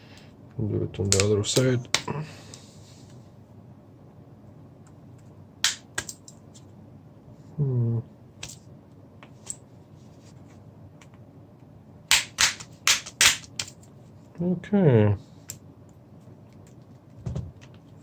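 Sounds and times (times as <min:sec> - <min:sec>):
person humming: 0:07.5 - 0:08.1.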